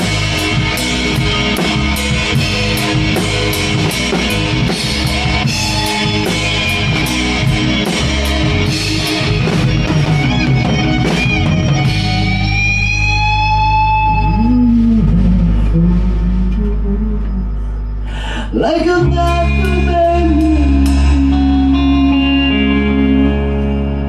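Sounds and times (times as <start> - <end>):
drum kit and cymbals: 0.0 - 14.2
electric guitar: 0.0 - 24.0
guitar bending long note: 0.0 - 24.0
sustained low bass note: 0.0 - 24.0.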